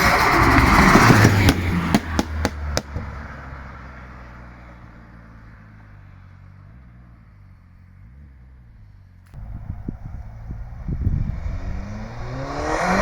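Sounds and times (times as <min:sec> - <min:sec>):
sharp exhaust pops: 0:00.0 - 0:03.1
low engine note: 0:04.6 - 0:13.0.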